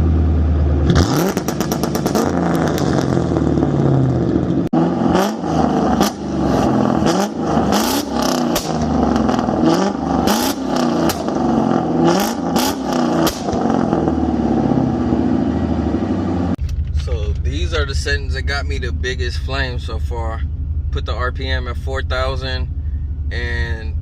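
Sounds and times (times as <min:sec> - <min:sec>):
engine revving in quick blips: 0:00.8 - 0:15.1
exhaust pops and bangs: 0:07.0 - 0:11.6, 0:12.2 - 0:14.0.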